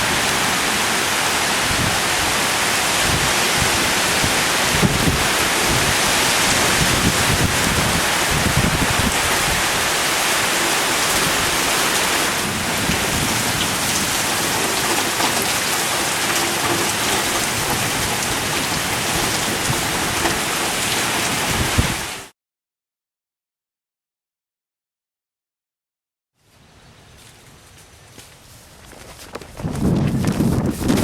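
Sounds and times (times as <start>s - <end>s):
thunder rumbling: 0.0s - 22.1s
heavy rain pouring: 0.0s - 22.3s.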